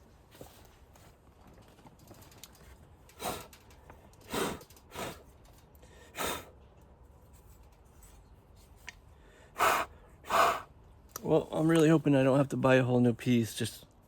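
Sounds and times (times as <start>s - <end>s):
man breathing out heavily: 3.2s - 3.6s, 4.2s - 6.6s, 9.1s - 10.7s.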